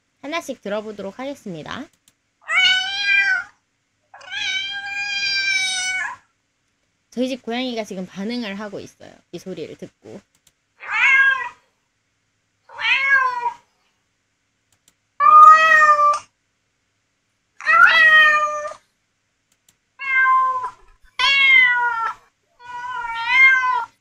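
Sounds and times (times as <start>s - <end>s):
cat meowing: 2.4s - 3.6s, 4.2s - 6.2s, 10.8s - 11.6s, 12.7s - 13.6s, 15.2s - 16.3s, 17.6s - 18.8s, 20.0s - 24.0s.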